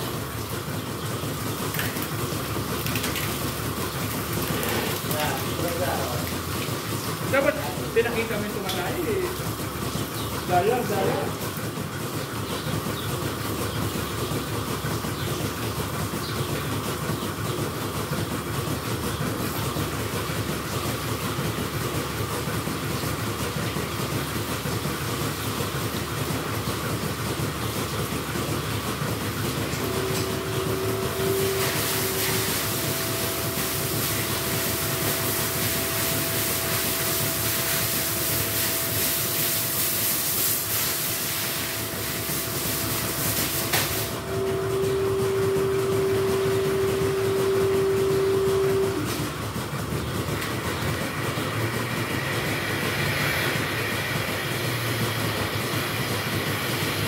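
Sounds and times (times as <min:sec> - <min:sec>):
machinery rattling clatter: 0:00.0 - 0:57.0
steady hum: 0:27.5 - 0:57.0.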